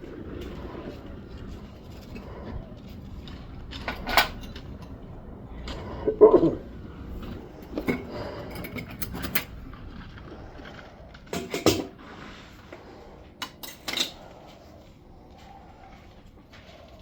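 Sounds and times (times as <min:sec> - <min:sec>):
metal tools clinking and knocking: 0:13.4 - 0:14.2.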